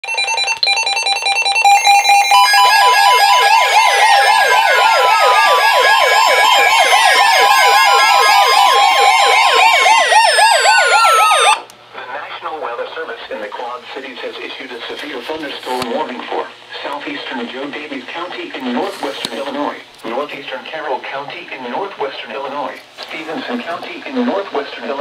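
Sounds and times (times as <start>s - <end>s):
electronic emergency alert siren: 0.0s - 11.7s.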